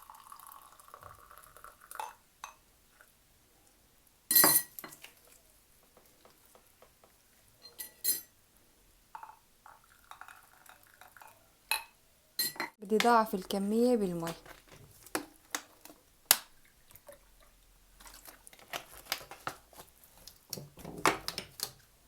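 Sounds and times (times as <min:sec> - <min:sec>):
water pouring: 0:00.0 - 0:02.2, 0:09.2 - 0:11.5
dishes and utensils clinking: 0:04.3 - 0:05.1, 0:07.6 - 0:08.4, 0:11.7 - 0:13.2.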